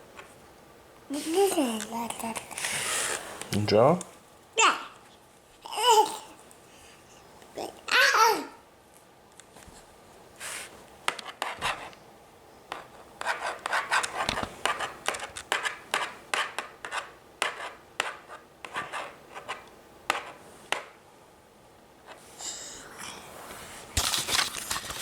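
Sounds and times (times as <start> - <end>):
drawing tool scratching on surface: 2.6 - 3.2, 11.2 - 11.9, 12.7 - 20.4.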